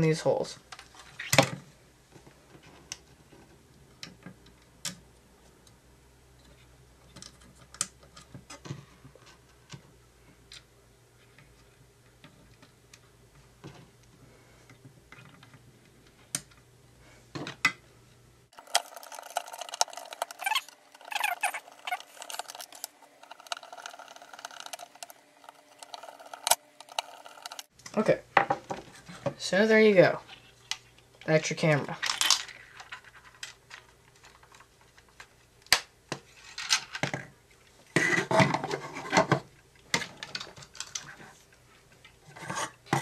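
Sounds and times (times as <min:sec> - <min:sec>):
background hum: 0:00.0 - 0:43.0
plastic parts rattling: 0:18.6 - 0:27.7, 0:31.8 - 0:35.3.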